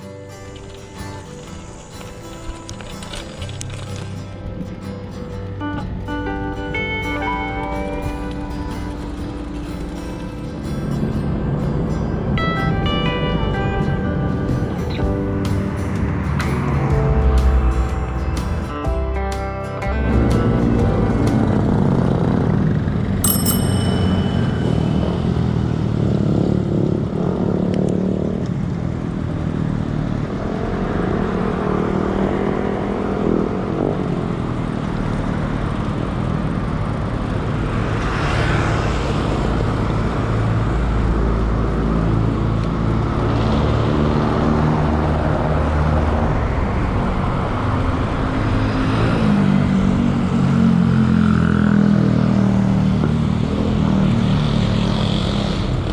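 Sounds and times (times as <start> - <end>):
motor vehicles passing: 0.0 - 55.9
bicycle bell ringing: 23.2 - 26.7.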